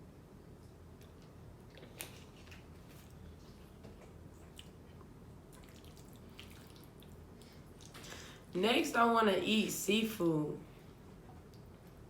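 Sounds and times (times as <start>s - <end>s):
low room hum: 0.0s - 12.0s
wet mouth eating sounds: 4.4s - 8.2s.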